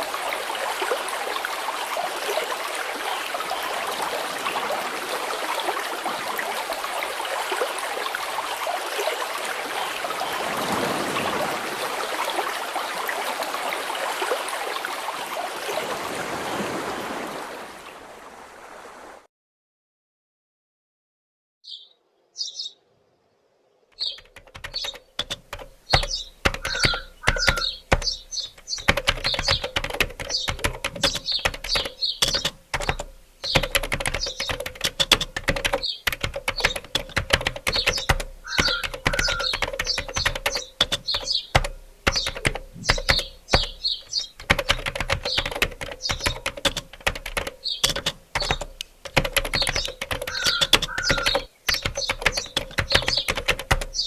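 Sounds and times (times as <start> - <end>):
keyboard typing clicks: 24.0 - 54.0.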